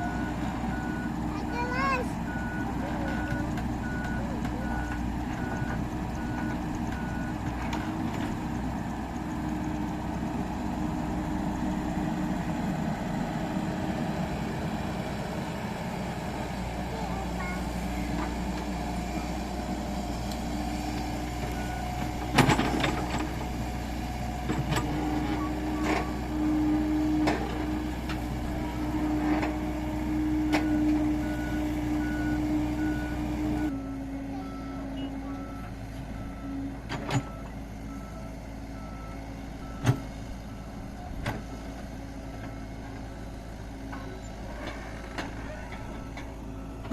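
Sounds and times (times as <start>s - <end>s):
heavy diesel machinery running: 0.0s - 46.9s
reversing alarm beeping: 30.5s - 40.7s, 45.9s - 46.9s.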